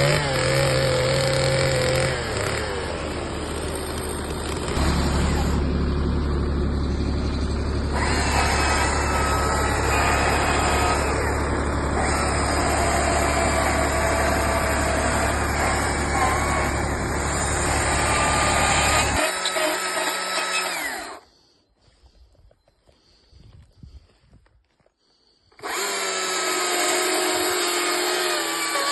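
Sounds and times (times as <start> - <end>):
chainsaw carving wood: 0.0 - 5.7, 7.8 - 21.3, 25.6 - 28.9.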